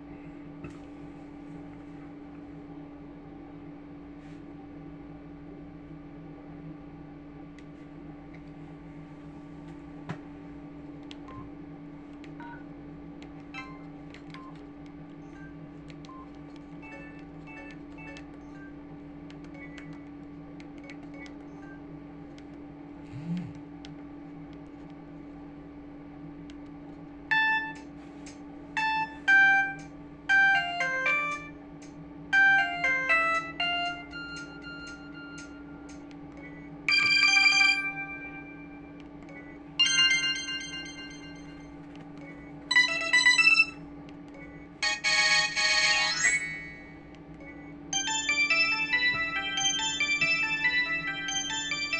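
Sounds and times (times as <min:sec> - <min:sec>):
low electrical hum: 0:00.0 - 0:51.9
phone ringtone melody: 0:36.9 - 0:38.8, 0:39.8 - 0:41.6, 0:42.7 - 0:43.8, 0:44.8 - 0:47.0, 0:48.0 - 0:51.9.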